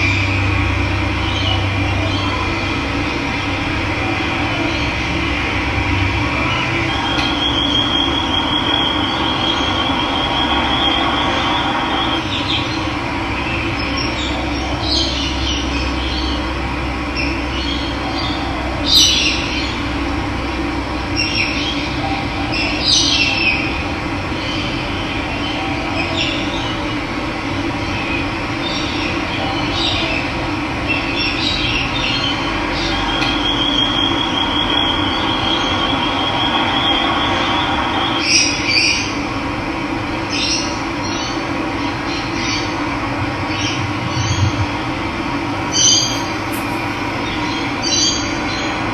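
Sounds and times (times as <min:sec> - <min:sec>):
birds chirping: 0:45.6 - 0:48.6
high fast bird trill: 0:45.7 - 0:48.2.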